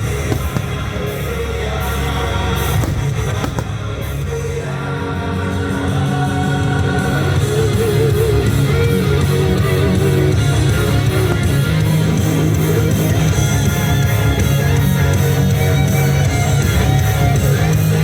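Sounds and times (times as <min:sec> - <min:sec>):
loud rock music with singing: 0:00.0 - 0:18.0.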